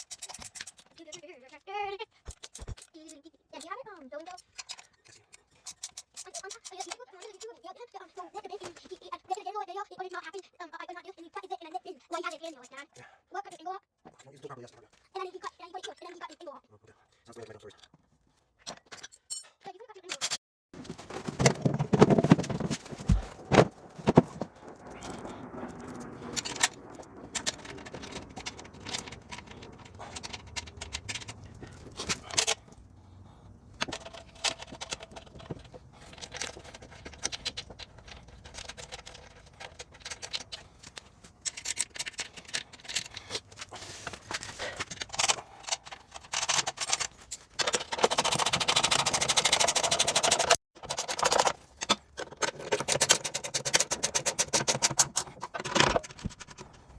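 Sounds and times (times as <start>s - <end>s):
metal hand tools clicking and scraping: 0.0s - 1.2s, 2.2s - 7.6s, 18.6s - 20.4s, 24.1s - 56.9s.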